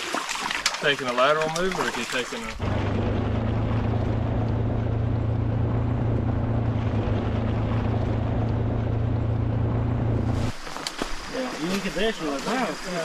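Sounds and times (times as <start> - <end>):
small engine humming steadily: 2.5 - 10.5.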